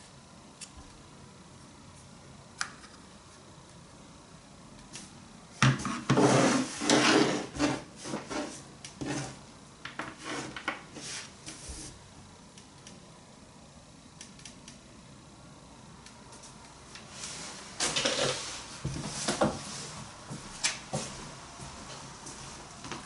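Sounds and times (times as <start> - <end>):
objects rubbing scraping and knocking: 5.7 - 12.0, 17.2 - 19.9.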